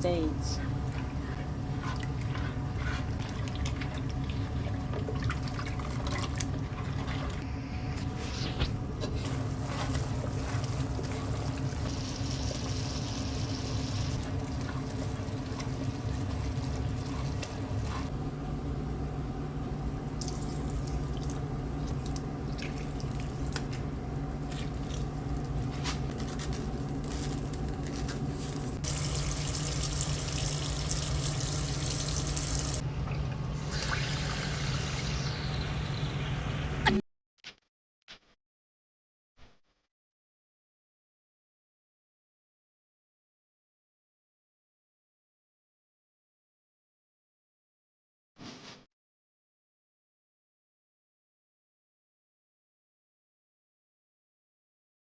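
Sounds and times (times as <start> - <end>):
liquid sloshing and trickling: 1.9 - 7.4.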